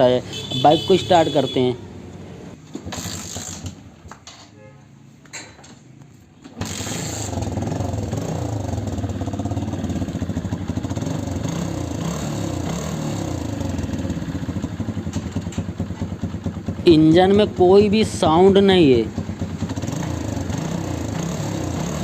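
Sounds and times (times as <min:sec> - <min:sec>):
engine clicking: 0:02.6 - 0:04.4, 0:06.4 - 0:11.0, 0:13.6 - 0:20.5
motorcycle engine idling: 0:06.6 - 0:22.0.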